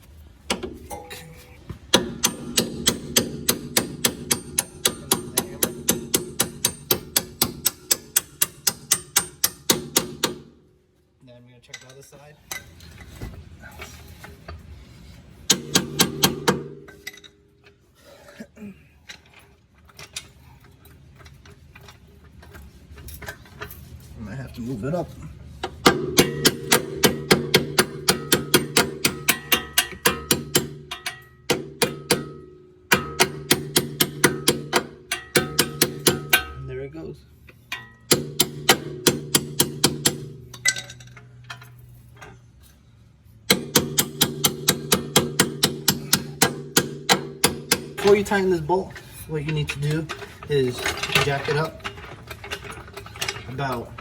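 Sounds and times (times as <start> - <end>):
metal-on-metal taps ringing: 0.5 - 10.6, 25.7 - 36.7, 37.7 - 42.4, 43.5 - 48.5
hand ratchet clicking: 1.9 - 10.5, 25.8 - 36.6, 43.5 - 48.4.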